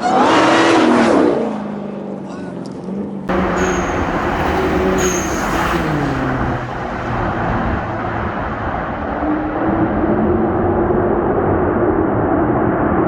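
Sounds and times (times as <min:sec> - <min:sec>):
car engine revving loudly: 0:03.3 - 0:12.2.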